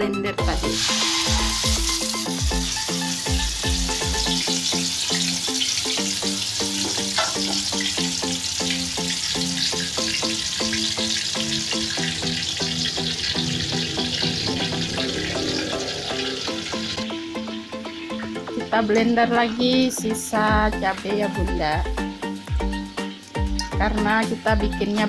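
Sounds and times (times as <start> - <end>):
paste sizzling in hot oil: 0.4 - 20.4.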